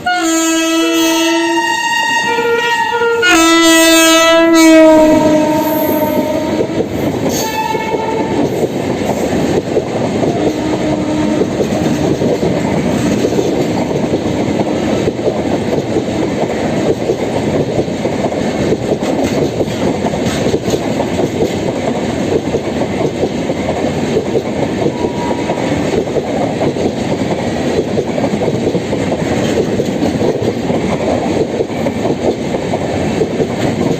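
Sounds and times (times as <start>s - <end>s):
locomotive horn blasts: 0.0s - 8.5s, 10.4s - 11.6s, 24.9s - 25.6s
train wheels rattling over track: 0.0s - 33.9s.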